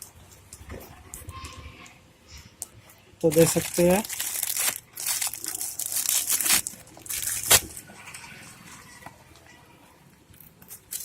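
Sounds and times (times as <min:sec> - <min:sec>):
packaging being torn and crinkled: 0:03.3 - 0:07.8.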